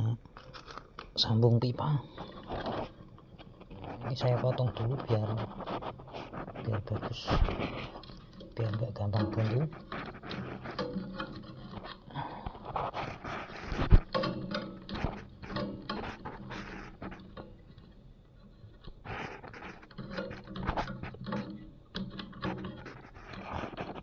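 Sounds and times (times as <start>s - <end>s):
hand tools clicking and scraping: 0.0s - 18.0s, 18.7s - 24.0s.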